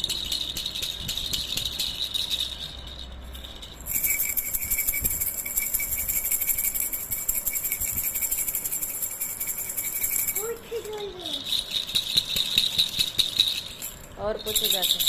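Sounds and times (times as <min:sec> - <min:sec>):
baby rattle toys shaken: 0:00.0 - 0:15.0.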